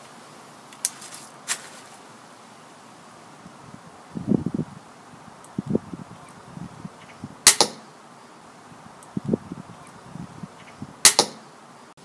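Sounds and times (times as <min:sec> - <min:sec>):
crossbow handling knocks and rustles: 0:00.8 - 0:02.0.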